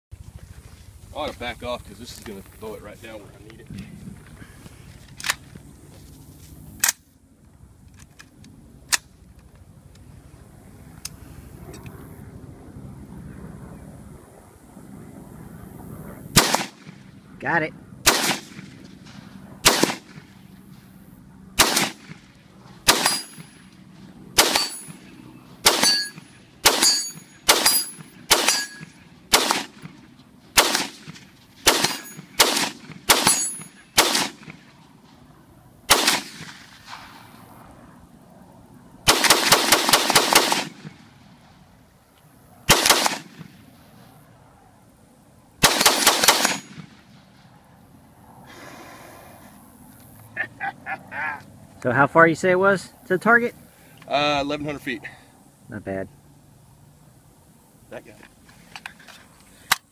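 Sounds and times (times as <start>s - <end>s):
rifle single shots: 16.3s - 17.0s, 18.0s - 20.4s, 21.6s - 23.6s, 24.3s - 34.7s, 35.9s - 37.4s, 39.0s - 41.1s, 42.7s - 43.6s, 45.6s - 47.2s
rifle rapid fire: 16.4s - 17.0s, 18.0s - 18.9s, 19.6s - 20.3s, 21.6s - 23.5s, 24.3s - 25.0s, 25.6s - 30.0s, 30.6s - 34.7s, 35.9s - 37.2s, 39.0s - 41.1s, 42.7s - 43.6s, 45.6s - 47.2s.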